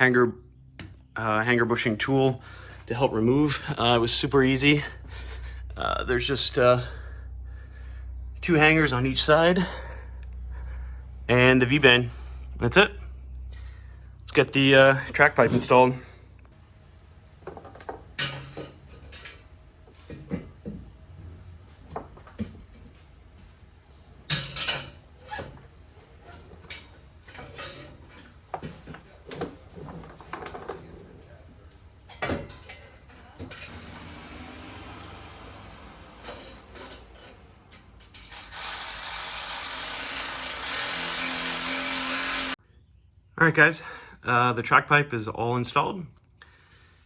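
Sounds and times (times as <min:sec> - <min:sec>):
metal exhaust parts clanking: 0:17.4 - 0:20.7, 0:24.2 - 0:31.1, 0:31.8 - 0:34.2, 0:35.0 - 0:38.6
ratchet wrench clicking: 0:38.2 - 0:42.6.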